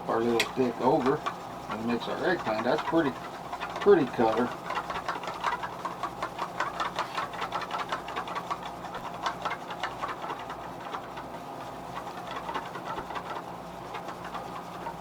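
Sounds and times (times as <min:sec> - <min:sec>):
stick tapping cup while stirring: 0:00.2 - 0:11.3.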